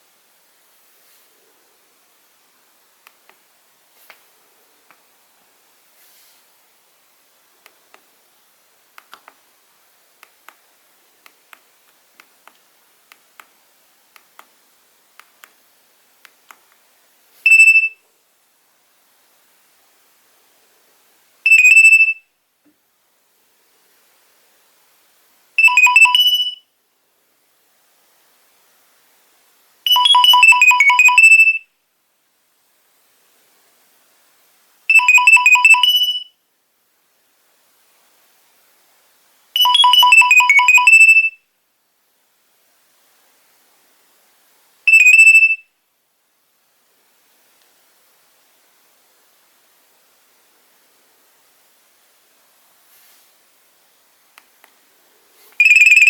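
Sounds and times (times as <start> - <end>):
phone keypad buttons clicking: 9.0 - 9.4
high electronic ringtone beep: 25.6 - 26.6, 29.9 - 31.6, 34.9 - 36.3, 39.6 - 41.4, 44.9 - 45.6, 55.6 - 56.0.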